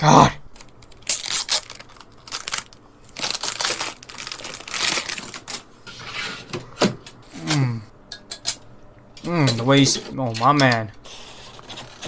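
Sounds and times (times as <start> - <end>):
packaging crinkling: 0.6 - 5.8.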